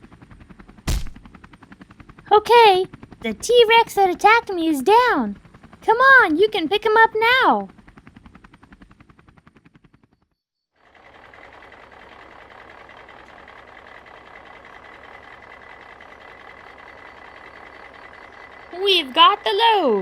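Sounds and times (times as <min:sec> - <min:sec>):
engine-like drone with high whine: 0:10.9 - 0:20.0.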